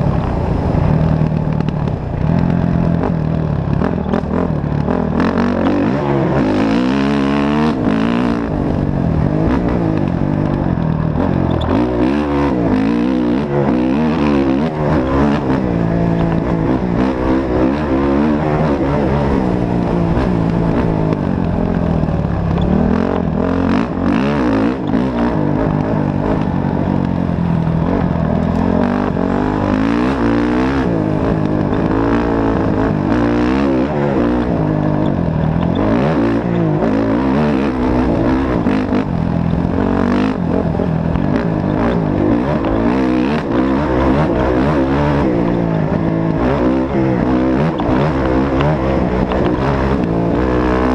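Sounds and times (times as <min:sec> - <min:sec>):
engine revving: 0:00.0 - 0:50.9.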